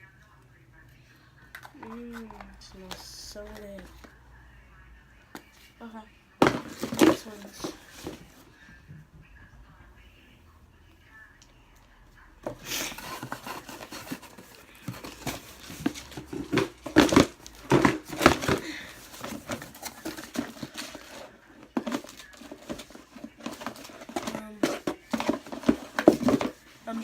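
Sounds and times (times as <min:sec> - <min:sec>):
crinkling and rustling: 0:01.5 - 0:04.2, 0:06.4 - 0:08.5, 0:12.4 - 0:27.0.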